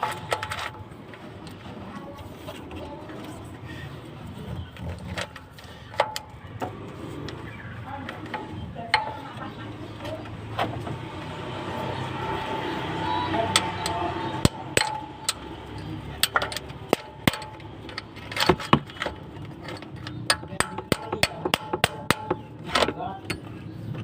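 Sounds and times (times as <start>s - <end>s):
hand tools tapping on metal: 5.1s - 10.6s, 13.3s - 24.0s.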